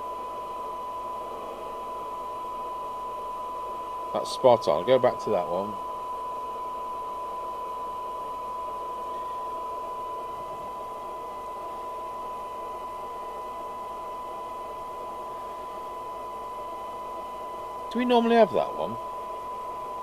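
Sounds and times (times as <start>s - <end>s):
steady test tone from loudspeaker: 0.0s - 20.0s
radio hiss: 4.1s - 5.9s, 17.9s - 19.0s.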